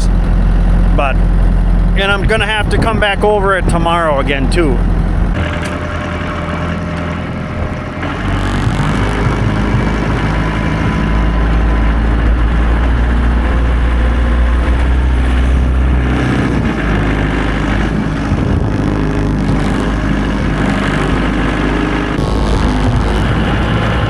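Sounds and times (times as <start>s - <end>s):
tractor engine droning: 0.0s - 24.0s.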